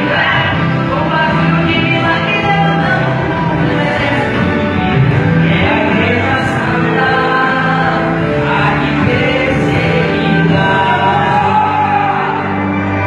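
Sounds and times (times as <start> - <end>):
choir singing gospel song: 0.0 - 13.0
instrumental backing: 0.0 - 13.0.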